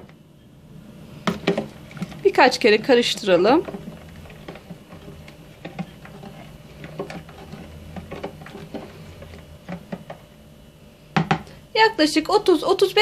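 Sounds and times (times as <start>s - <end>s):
spoon stirring in bowl: 1.2s - 10.3s.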